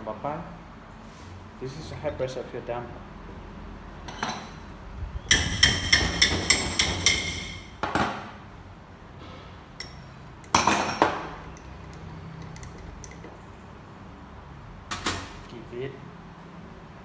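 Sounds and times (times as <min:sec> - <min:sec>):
metal tool tapping metal: 0:05.3 - 0:07.8, 0:09.8 - 0:13.2
metal clanks: 0:05.3 - 0:07.9.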